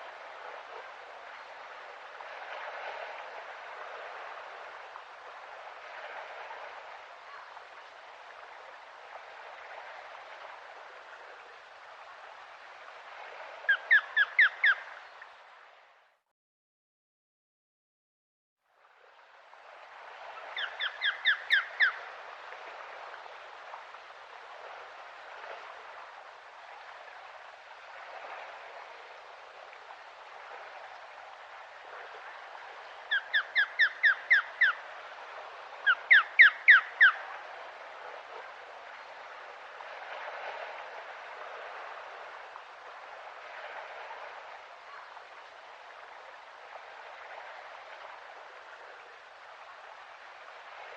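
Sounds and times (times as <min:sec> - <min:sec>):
osprey whistled calls: 0:13.7 - 0:14.9, 0:20.6 - 0:22.0, 0:33.1 - 0:34.8, 0:35.8 - 0:37.2.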